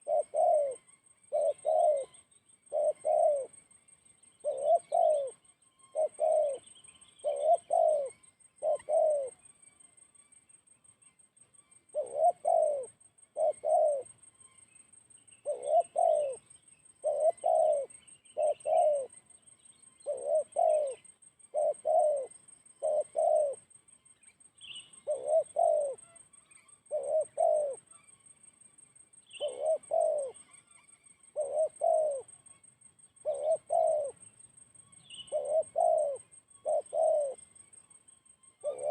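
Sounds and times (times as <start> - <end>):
dove cooing: 0.0 - 3.6, 4.4 - 9.4, 11.9 - 14.2, 15.4 - 19.2, 20.0 - 23.7, 24.6 - 26.2, 26.8 - 28.0, 29.3 - 30.4, 31.3 - 32.3, 33.2 - 34.2, 35.0 - 37.5, 38.6 - 38.9
small birds chirping: 0.0 - 38.9.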